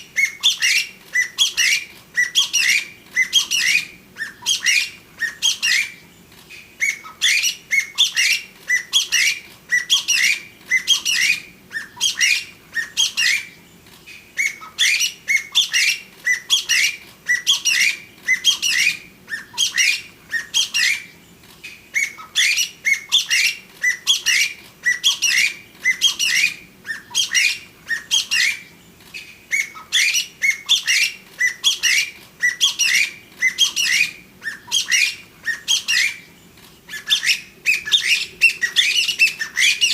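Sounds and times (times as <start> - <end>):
partridge calling: 0.1 - 13.5, 14.1 - 36.2, 36.9 - 39.9.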